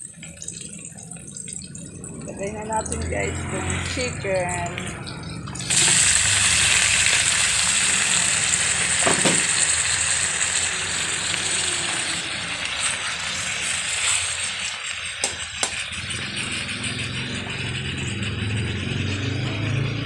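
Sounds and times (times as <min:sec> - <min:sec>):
chicken sizzling in hot oil: 0:02.6 - 0:17.2
utensil knocking in pan: 0:08.8 - 0:10.0, 0:15.2 - 0:15.8.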